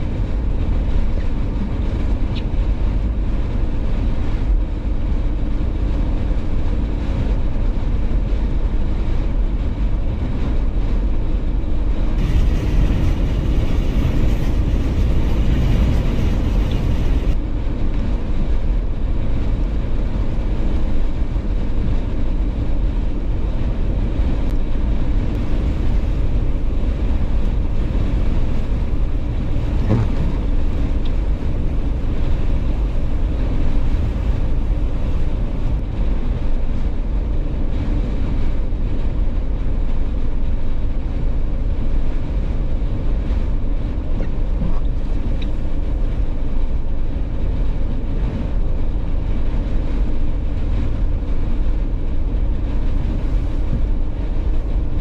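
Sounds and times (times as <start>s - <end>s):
car driving rumble: 0.0s - 55.0s
wind noise: 0.0s - 55.0s
brief knock: 29.8s - 30.4s.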